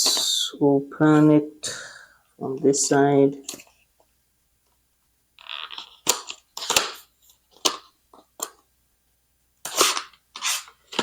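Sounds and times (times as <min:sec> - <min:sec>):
plastic packaging cracking open: 0:05.4 - 0:07.9.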